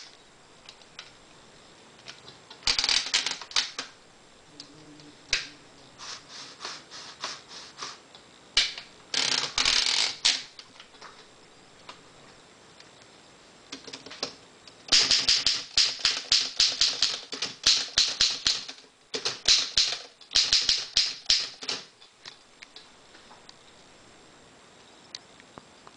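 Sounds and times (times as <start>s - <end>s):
typewriter keystrokes clacking: 13.7s - 21.9s.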